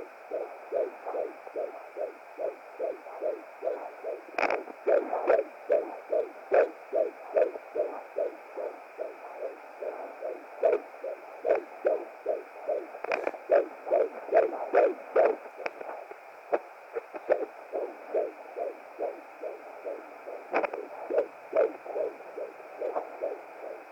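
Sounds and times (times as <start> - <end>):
fetal heartbeat on doppler: 0.0 - 23.9
steady hiss: 0.0 - 23.9.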